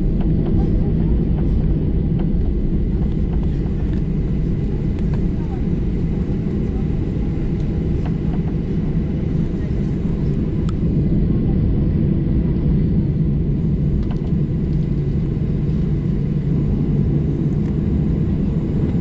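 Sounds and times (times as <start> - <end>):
airliner cabin rumble: 0.0 - 19.0.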